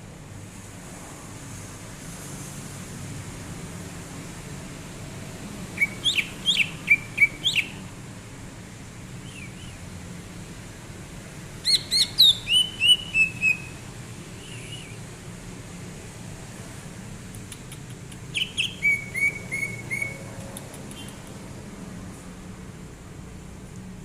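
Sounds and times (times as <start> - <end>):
bird whistled chirps: 5.8 - 7.8, 9.2 - 9.8, 11.6 - 13.8, 14.4 - 15.0, 18.3 - 20.2.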